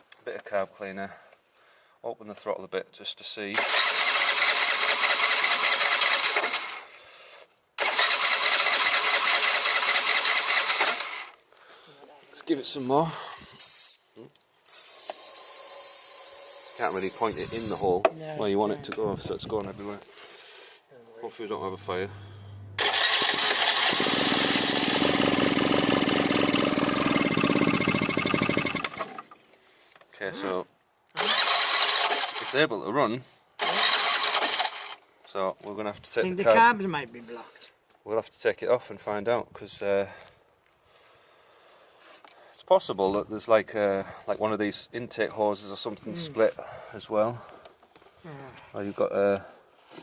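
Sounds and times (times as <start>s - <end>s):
scooter engine cranking: 3.6s - 6.9s, 7.8s - 11.3s, 21.7s - 29.4s, 31.2s - 32.6s, 33.6s - 35.0s.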